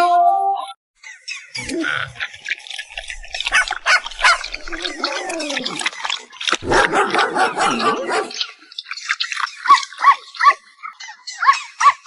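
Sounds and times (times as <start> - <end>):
dog barking: 3.5 - 4.5, 6.6 - 8.4
dog yelping: 3.5 - 5.1.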